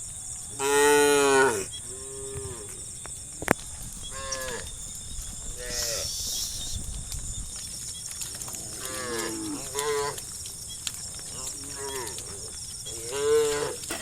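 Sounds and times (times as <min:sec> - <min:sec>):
cows mooing: 0:00.6 - 0:02.8, 0:04.0 - 0:06.8, 0:08.3 - 0:10.3, 0:11.3 - 0:14.0.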